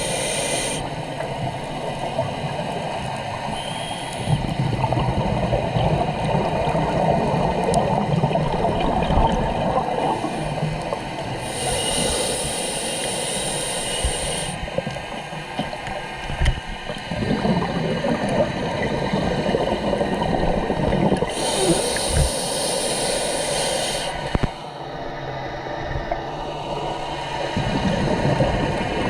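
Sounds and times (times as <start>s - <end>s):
hissing regulator inhale: 0.0s - 1.1s, 3.4s - 4.6s, 10.2s - 14.7s, 21.2s - 24.8s
exhaled bubbles rushing: 4.3s - 11.3s, 16.8s - 21.4s, 27.3s - 29.0s.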